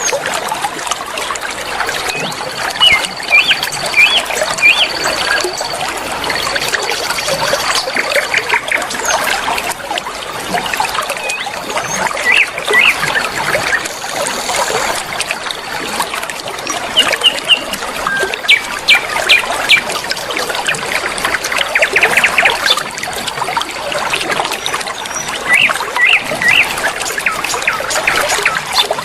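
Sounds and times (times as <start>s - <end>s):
river water trickling: 0.0s - 29.0s
songbirds chirping and whistling: 2.0s - 9.2s, 11.0s - 14.9s, 16.7s - 20.0s, 21.7s - 22.8s, 25.1s - 29.0s.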